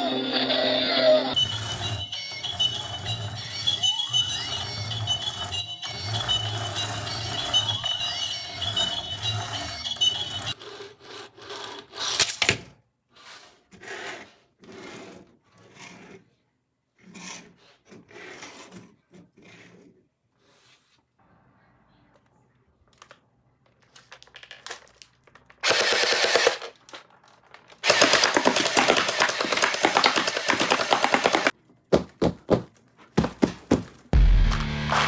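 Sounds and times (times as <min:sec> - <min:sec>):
toy packaging rustling: 0:22.8 - 0:34.1
intro music with steady beat: 0:34.2 - 0:35.0.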